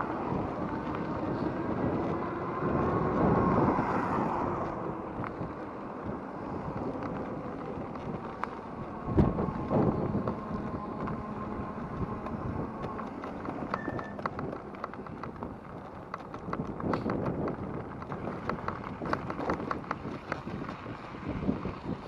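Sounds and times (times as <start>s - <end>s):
wind buffeting microphone: 0.0s - 22.0s
small clicks and rattles: 4.6s - 22.0s.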